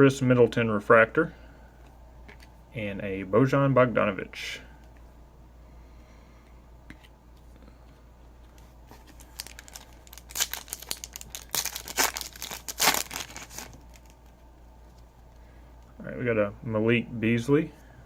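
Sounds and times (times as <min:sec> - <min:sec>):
foil wrapper tearing and crinkling: 0:09.1 - 0:14.3.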